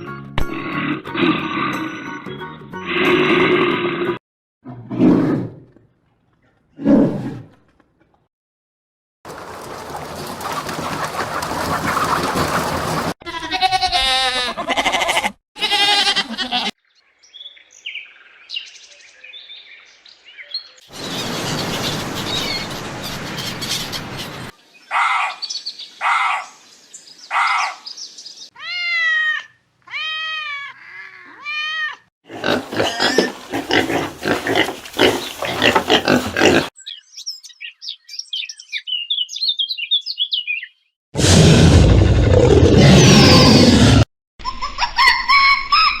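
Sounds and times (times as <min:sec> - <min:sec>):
rising and falling animal calls: 0:09.3 - 0:13.2, 0:41.7 - 0:44.0
rough noisy animal calls: 0:32.3 - 0:36.7
high bird chirps: 0:36.8 - 0:40.9.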